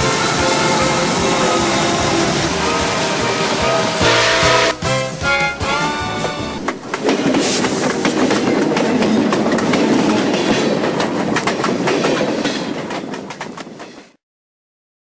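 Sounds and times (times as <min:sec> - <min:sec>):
freight train rumble: 0:00.0 - 0:14.2
train wheels clicking over rail joints: 0:06.2 - 0:14.2.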